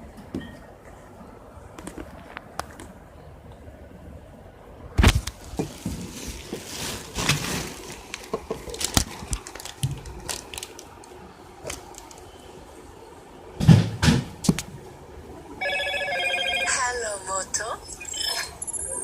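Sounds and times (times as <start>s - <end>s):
plastic clicks and rustling: 7.2s - 12.3s.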